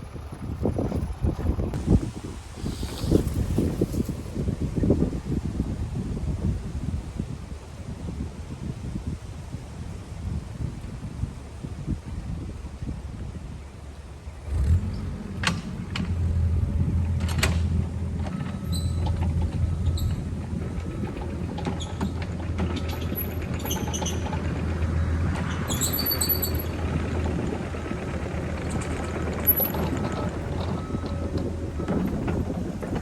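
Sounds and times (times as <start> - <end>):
machine engine running: 14.5 - 33.0
brief high squeaks: 18.4 - 20.3, 25.5 - 26.8.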